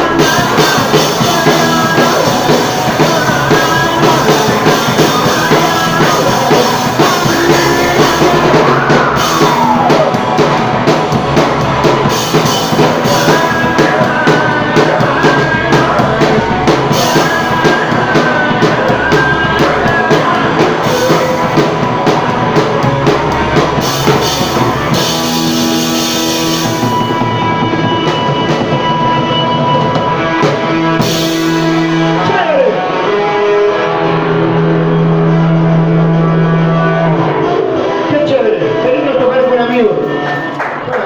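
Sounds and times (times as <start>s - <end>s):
live rock band playing: 0.0s - 41.0s.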